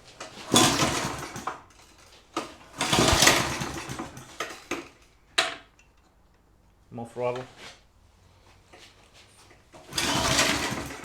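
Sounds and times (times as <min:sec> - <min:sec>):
lawn mower engine cranking: 0:00.2 - 0:06.1, 0:09.7 - 0:11.0.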